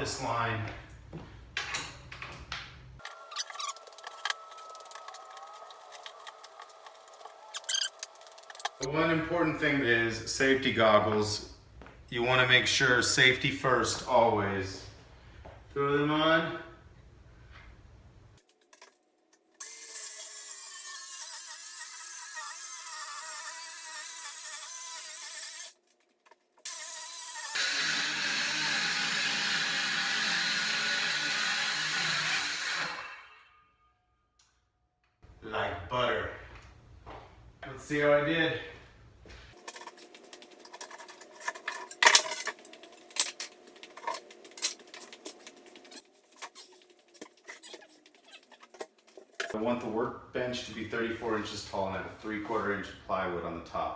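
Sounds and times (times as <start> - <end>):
boards and tools clattering: 1.6 - 8.9, 39.6 - 49.6
circular saw cutting a board: 3.0 - 8.9, 19.6 - 25.8, 26.7 - 33.6.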